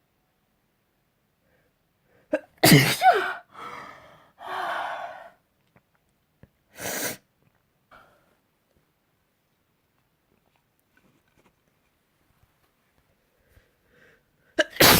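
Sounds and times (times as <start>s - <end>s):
person sneezing: 2.3s - 3.5s, 14.6s - 14.9s
breathy breaths: 3.2s - 5.4s.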